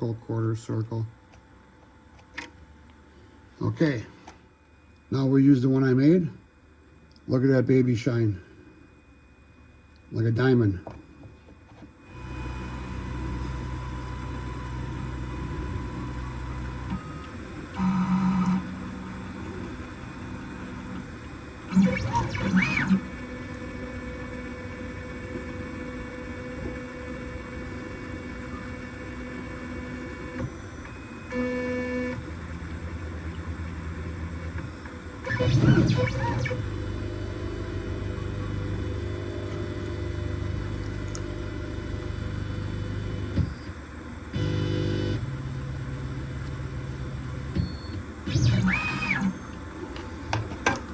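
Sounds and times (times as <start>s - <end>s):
stepper motors whining: 12.1s - 23.1s, 35.2s - 36.7s, 47.6s - 50.9s.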